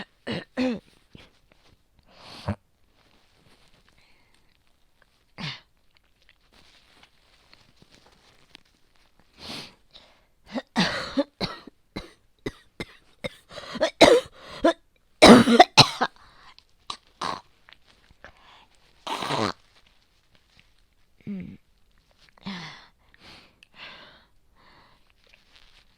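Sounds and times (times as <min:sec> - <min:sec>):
woman coughing: 0:00.0 - 0:00.8, 0:10.5 - 0:16.2.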